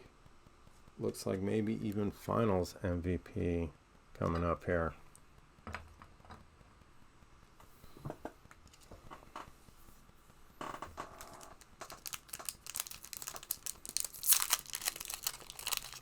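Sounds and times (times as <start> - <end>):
wrapper crinkling and tearing: 11.2 - 16.0.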